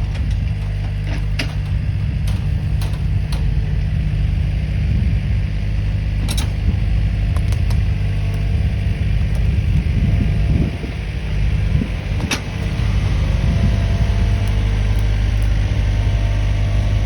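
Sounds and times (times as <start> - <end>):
pickup engine running: 0.0 - 17.0
sharp metallic clicks: 6.2 - 6.7.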